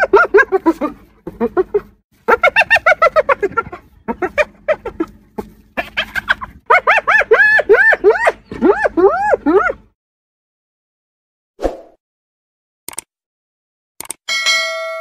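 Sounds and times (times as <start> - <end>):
hyena laughing: 0.0 - 9.9.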